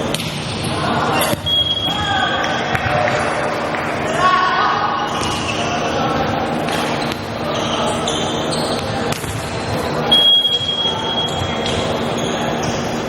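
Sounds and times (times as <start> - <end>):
crowd din: 0.0 - 13.0
sneakers squeaking on court: 0.1 - 3.0, 6.4 - 13.0
volleyball being struck: 0.1 - 3.4
referee whistle blast: 1.2 - 2.4, 10.1 - 11.5.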